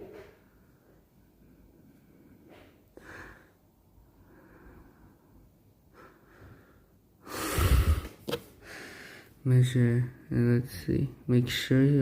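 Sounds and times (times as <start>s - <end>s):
person breathing and sniffing: 5.9s - 9.4s.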